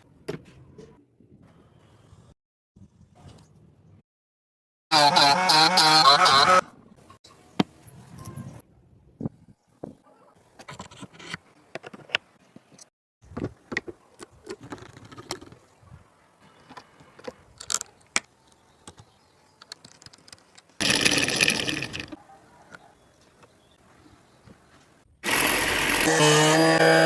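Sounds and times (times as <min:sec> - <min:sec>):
small scroll saw motor running: 0:20.8 - 0:22.2, 0:25.2 - 0:27.0.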